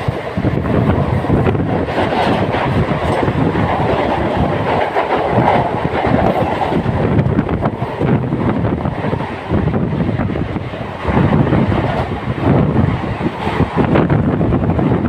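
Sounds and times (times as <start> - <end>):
wheels clattering over rail joints: 0.0 - 9.7
train rumble on board: 0.0 - 15.0.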